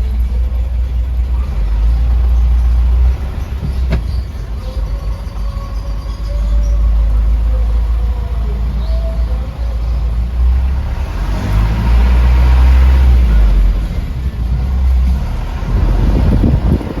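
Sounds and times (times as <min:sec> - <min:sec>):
engine and drivetrain rumble: 0:00.0 - 0:17.0.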